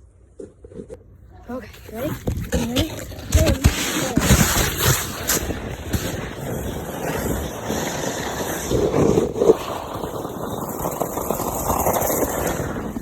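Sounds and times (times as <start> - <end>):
sled scraping over snow: 0.7 - 13.0.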